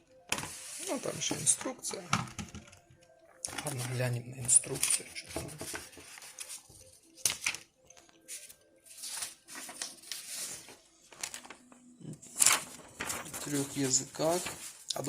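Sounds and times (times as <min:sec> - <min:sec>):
paper rustling and crinkling: 0:03.5 - 0:15.0.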